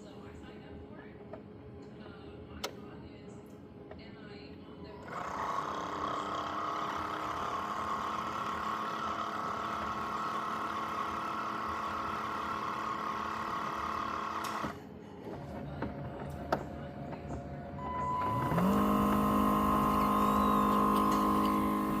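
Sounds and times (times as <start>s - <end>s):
robot vacuum motor whir: 5.1s - 14.8s, 18.2s - 22.0s.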